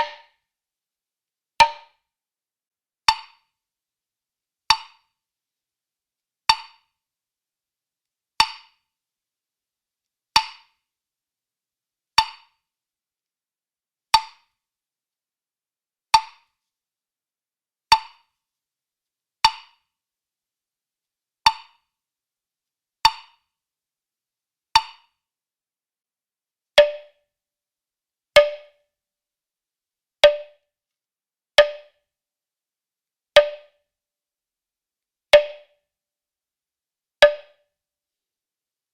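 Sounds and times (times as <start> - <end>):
woodblock knocks: 0.0 - 0.4, 1.6 - 1.9, 26.8 - 27.2, 28.4 - 28.8, 30.2 - 30.6, 31.6 - 32.0, 33.4 - 33.8, 35.4 - 35.7, 37.2 - 37.6.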